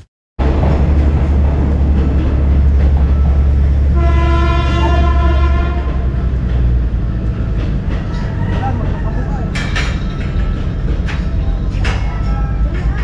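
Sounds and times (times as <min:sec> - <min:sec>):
train rumbling: 0:00.0 - 0:13.0
train horn chord: 0:03.8 - 0:06.4.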